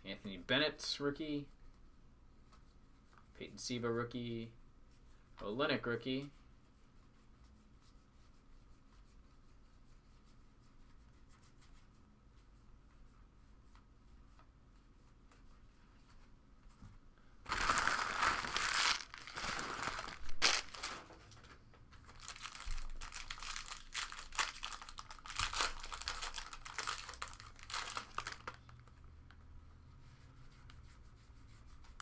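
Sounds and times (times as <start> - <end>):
wrapper tearing and crinkling: 17.5 - 21.0, 22.0 - 28.7.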